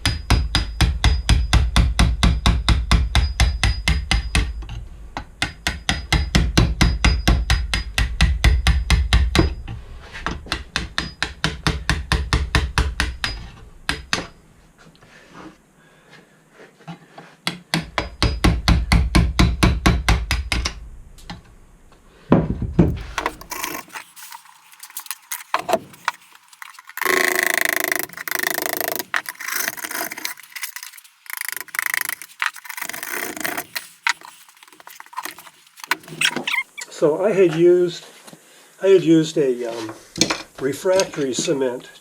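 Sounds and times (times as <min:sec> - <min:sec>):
rapid tapping of hand tools: 0:22.9 - 0:36.6
tools scraping cement: 0:22.9 - 0:36.8.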